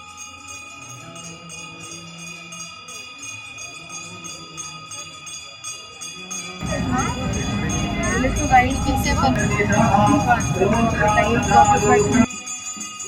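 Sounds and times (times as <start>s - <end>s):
jingling bells: 0.0s - 13.0s
drone-like tones: 6.6s - 12.3s.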